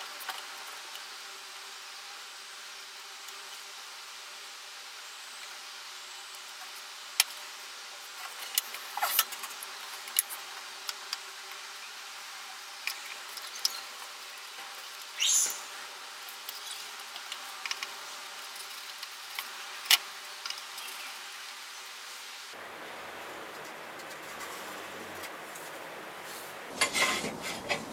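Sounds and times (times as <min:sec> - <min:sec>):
steady hiss: 0:00.0 - 0:27.9
wood pieces scraping: 0:26.7 - 0:27.9.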